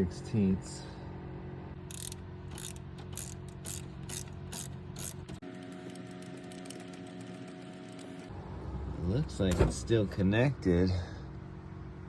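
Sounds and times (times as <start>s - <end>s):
ratchet wrench clicking: 1.8s - 8.3s.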